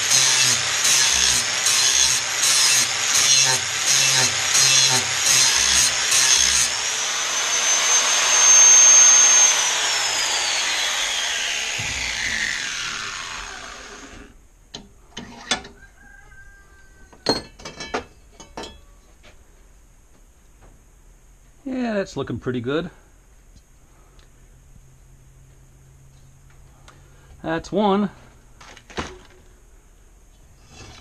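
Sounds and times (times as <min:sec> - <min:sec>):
angle grinder grinding steel: 0:00.0 - 0:14.4
grinder whine spinning down: 0:05.7 - 0:14.4.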